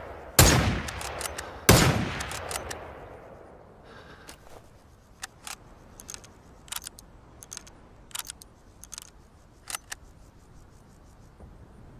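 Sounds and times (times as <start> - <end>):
rifle mechanism clicks: 0.4 - 3.4, 5.2 - 10.0.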